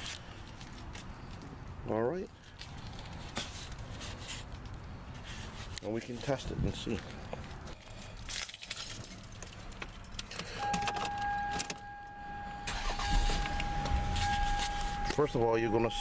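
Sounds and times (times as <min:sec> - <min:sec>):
keys jangling: 0:07.8 - 0:11.8
high electronic warning tone: 0:10.6 - 0:16.0.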